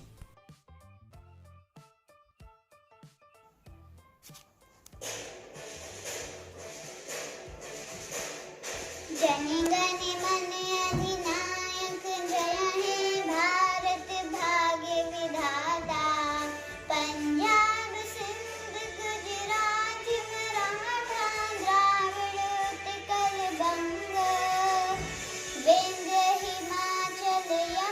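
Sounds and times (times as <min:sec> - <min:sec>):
backing music: 0:00.0 - 0:27.9
child singing: 0:09.1 - 0:27.9.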